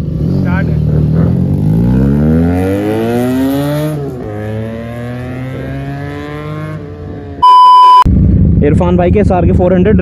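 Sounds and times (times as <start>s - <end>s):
motorcycle accelerating hard: 0.0s - 7.4s.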